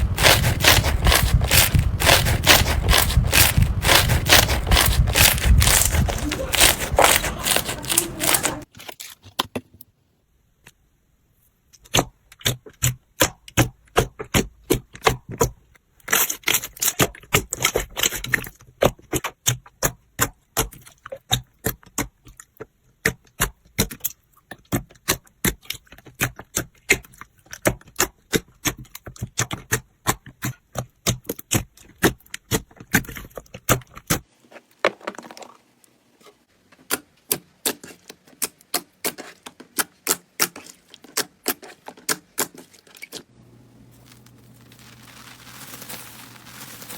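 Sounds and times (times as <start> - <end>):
slime squeezed crackling pops: 0.0 - 8.6.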